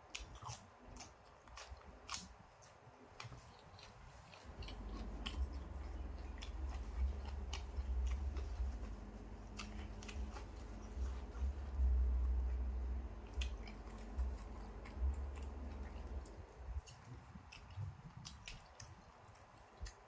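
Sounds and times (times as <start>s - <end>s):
person chewing and eating: 0.0s - 20.0s
low rumble: 4.4s - 18.6s.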